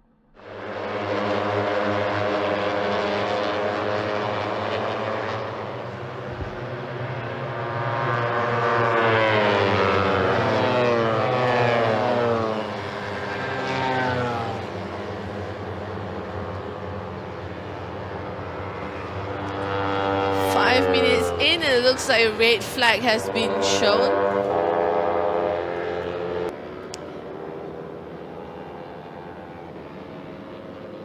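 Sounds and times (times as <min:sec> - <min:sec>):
race car engines at high revs: 0:00.9 - 0:20.6.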